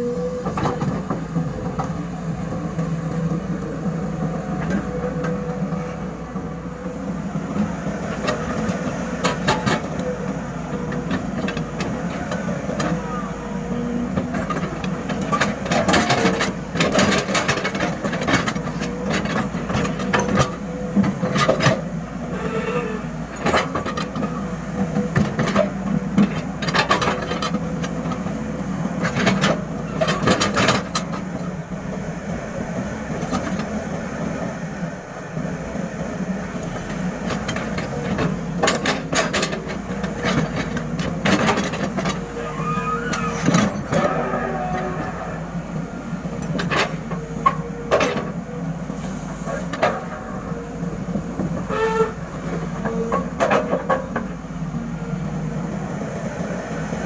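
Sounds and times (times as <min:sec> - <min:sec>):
excavator diesel engine running: 0:00.0 - 0:57.0
clanks on steel truck bed: 0:51.3 - 0:54.3.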